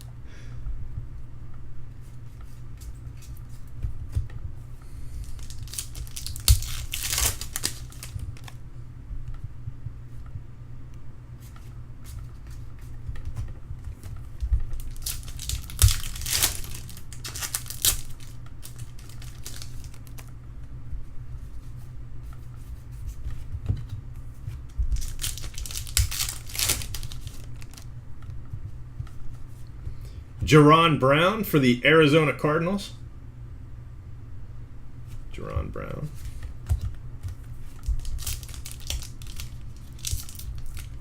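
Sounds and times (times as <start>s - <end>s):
cards clicking: 5.2s - 8.6s
wrapper tearing and crinkling: 5.2s - 8.6s, 14.7s - 20.3s, 25.0s - 27.9s, 37.6s - 41.0s.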